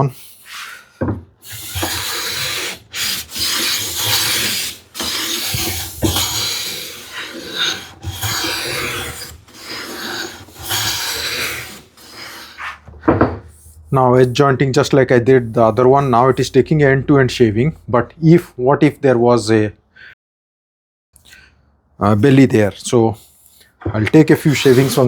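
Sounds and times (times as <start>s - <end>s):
hand plane shaving a board: 1.4s - 14.3s, 24.3s - 25.0s.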